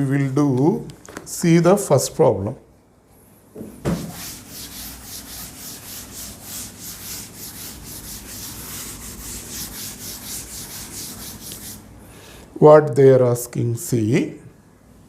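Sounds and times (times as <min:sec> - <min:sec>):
rubbing or scraping strokes: 0:03.9 - 0:11.9.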